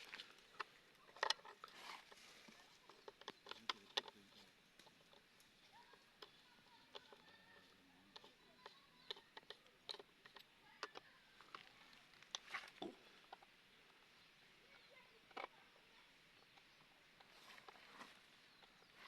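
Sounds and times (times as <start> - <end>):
faint tool clicks and taps: 2.5 - 12.6.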